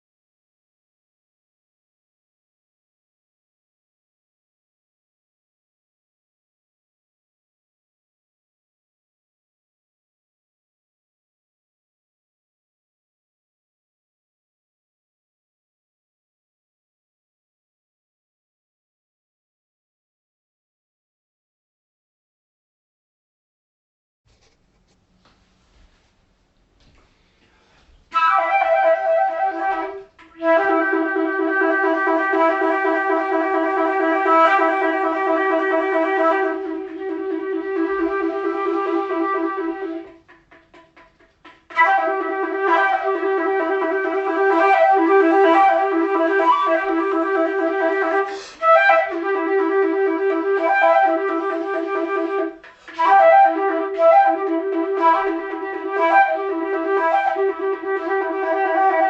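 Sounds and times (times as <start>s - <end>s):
flute-like wind instrument: 28.1s - 40.8s, 41.4s - 59.0s.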